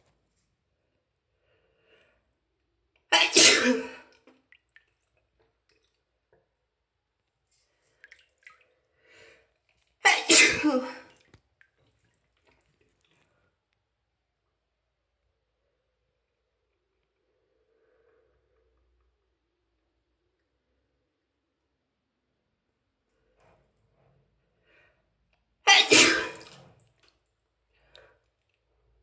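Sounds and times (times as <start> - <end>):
woman sneezing: 3.1 - 4.1, 10.0 - 11.1, 25.7 - 26.5.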